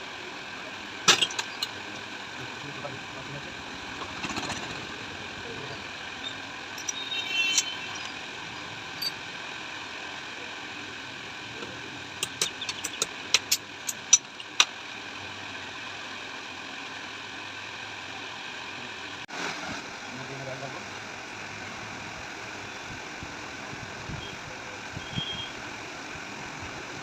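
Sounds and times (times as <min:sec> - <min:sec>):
sharp tool clicks and taps: 0:12.2 - 0:14.7.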